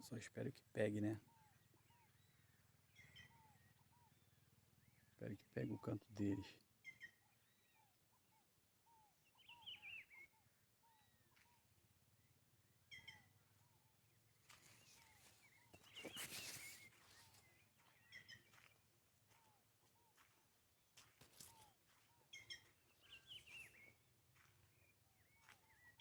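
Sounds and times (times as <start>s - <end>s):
birds calling: 12.8s - 26.0s.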